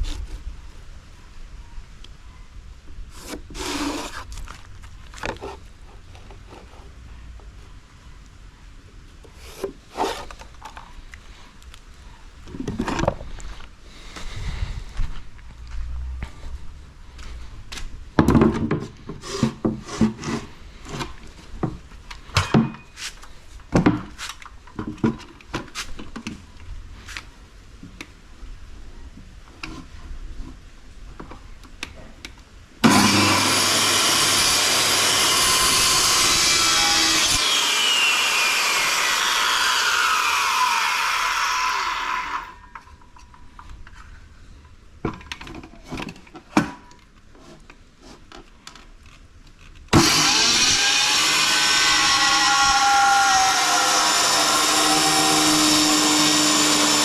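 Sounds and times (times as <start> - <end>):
power tool running: 32.8 - 42.5, 49.9 - 57.0.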